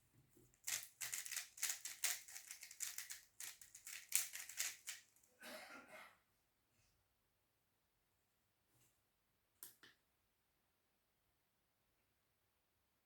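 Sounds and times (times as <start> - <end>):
puzzle cube plastic clacks: 0.6 - 5.0.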